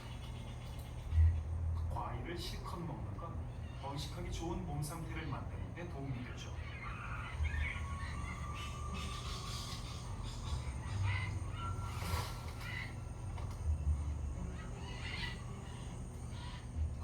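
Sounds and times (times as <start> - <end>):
steady low hum: 0.0 - 17.0
macaws squawking: 6.3 - 17.0.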